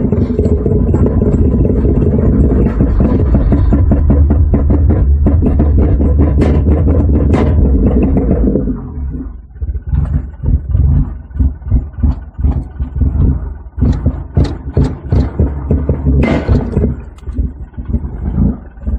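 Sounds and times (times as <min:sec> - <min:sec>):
car engine idling roughly: 0:00.0 - 0:18.9.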